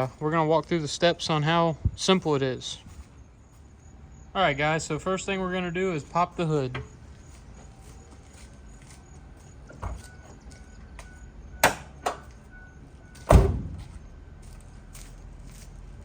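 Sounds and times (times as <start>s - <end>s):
van hood metal clicks and clunks: 6.6s - 7.1s, 9.7s - 10.4s, 11.0s - 12.4s, 13.2s - 14.0s.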